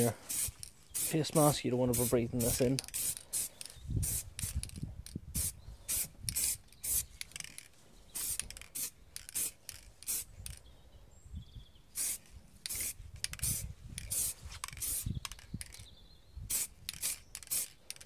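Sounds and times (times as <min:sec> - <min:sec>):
aerosol spray can hissing: 0:00.2 - 0:04.8, 0:05.4 - 0:07.2, 0:08.2 - 0:10.3, 0:12.0 - 0:15.2, 0:16.5 - 0:18.0.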